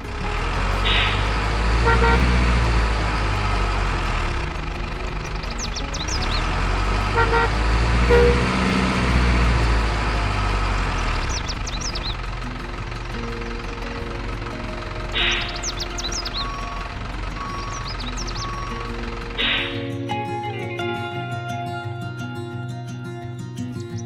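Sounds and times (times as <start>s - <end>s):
horn toots: 0.0s - 5.1s, 6.0s - 11.5s
model truck engine rumble: 0.0s - 20.0s
high chirps: 0.0s - 22.1s.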